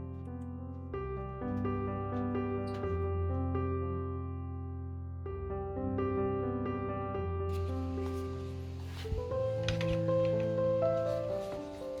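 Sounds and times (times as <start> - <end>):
music with held keyboard notes: 0.0 - 12.0.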